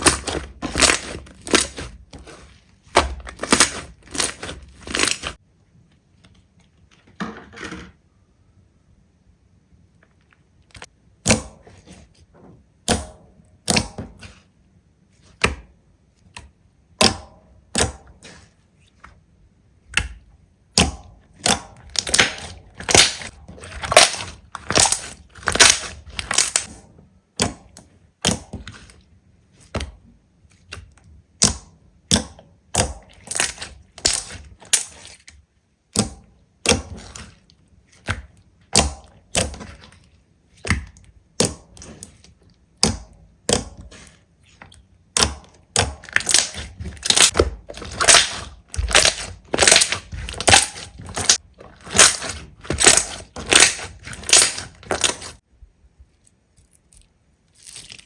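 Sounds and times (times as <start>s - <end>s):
slime crackling and popping: 0.0s - 2.5s, 3.2s - 5.4s, 21.4s - 26.7s, 32.8s - 35.3s, 45.1s - 55.4s, 56.7s - 58.0s.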